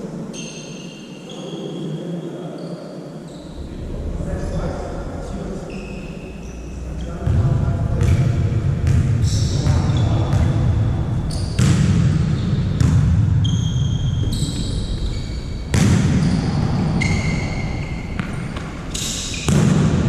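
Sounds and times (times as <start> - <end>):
steady hall noise: 0.0 - 20.0
sneaker squeaks on court: 11.3 - 19.8
volleyball strikes: 11.5 - 13.3, 15.7 - 16.4, 18.2 - 20.0.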